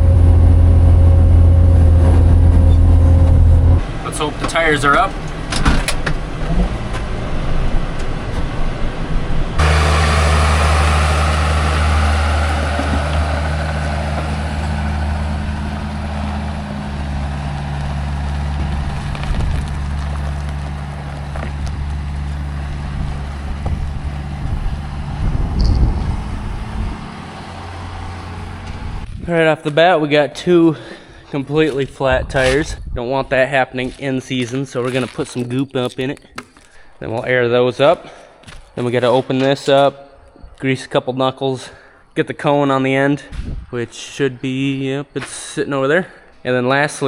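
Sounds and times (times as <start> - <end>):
vehicle engine running: 0.0 - 29.2.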